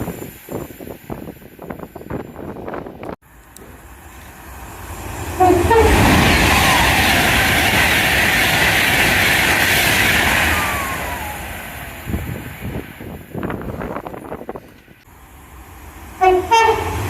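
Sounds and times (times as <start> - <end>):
train rushing past: 2.2 - 17.0
train horn note: 5.4 - 6.5, 16.2 - 17.0.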